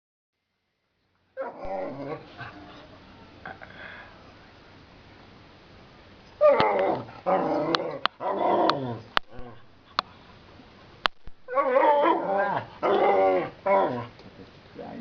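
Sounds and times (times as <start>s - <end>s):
dog whining and yowling: 1.4s - 3.6s, 6.4s - 9.7s, 11.5s - 14.2s.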